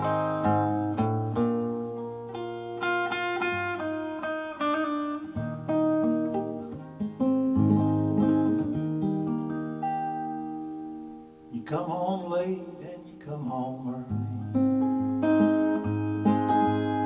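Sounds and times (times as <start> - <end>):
acoustic guitar picking: 0.0 - 17.0.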